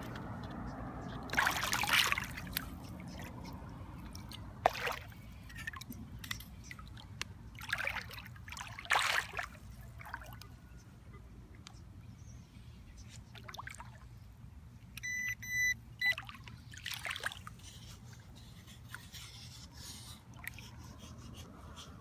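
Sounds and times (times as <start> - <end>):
scoop splashing in wet sand: 1.3 - 3.3, 7.6 - 10.4.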